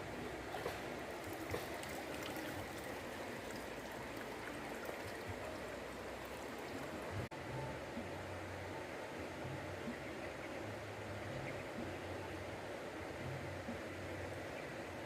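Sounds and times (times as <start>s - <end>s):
river water rushing: 0.0s - 7.4s.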